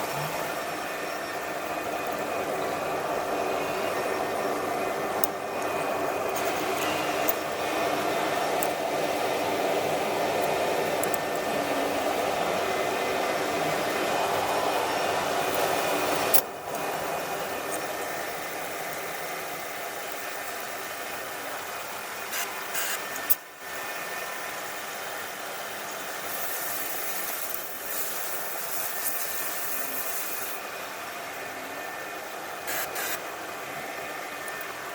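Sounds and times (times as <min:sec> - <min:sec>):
small power tool motor running: 0:32.6 - 0:33.2.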